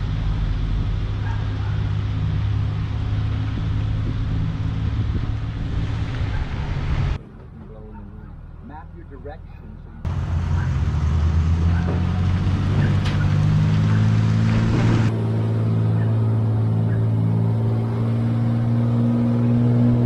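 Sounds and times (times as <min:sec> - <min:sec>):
diesel pickup engine pulling hard: 0:00.0 - 0:07.2, 0:10.0 - 0:20.0.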